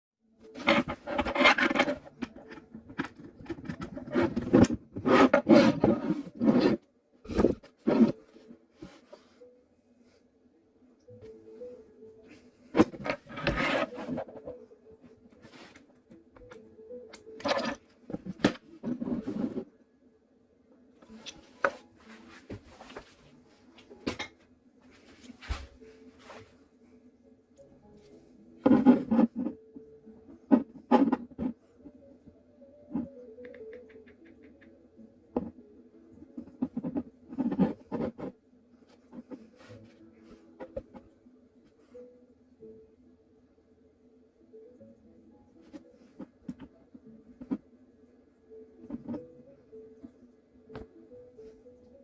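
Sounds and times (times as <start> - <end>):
rubbing and scraping: 0.4 - 9.3, 12.7 - 14.6, 17.4 - 19.7, 28.6 - 29.6, 36.4 - 41.1
faint steady hum: 5.7 - 52.0.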